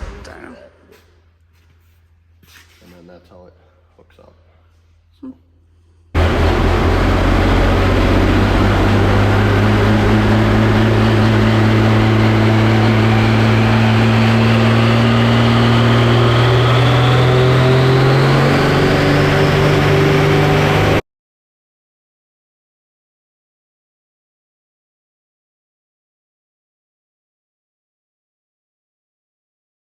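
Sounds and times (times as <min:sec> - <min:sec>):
high whine: 0:06.2 - 0:21.0
tractor engine running loud: 0:06.2 - 0:21.0.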